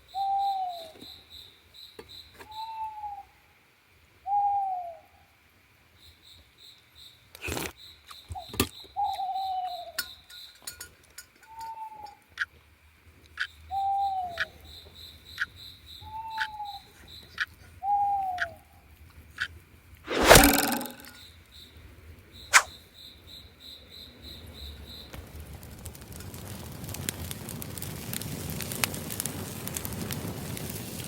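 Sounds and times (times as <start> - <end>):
loud crackle: 25.2 - 31.0.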